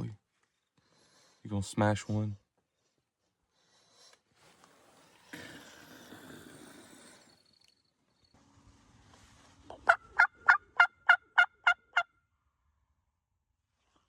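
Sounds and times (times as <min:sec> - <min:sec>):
soft rustle: 0:08.4 - 0:09.8
turkey yelps: 0:09.8 - 0:12.0.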